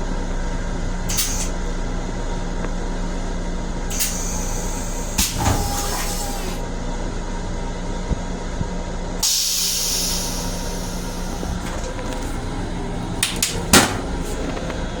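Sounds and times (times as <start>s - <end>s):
steady rumble and hum: 0.0s - 15.0s
sudden hiss: 3.9s - 6.6s, 9.2s - 12.5s.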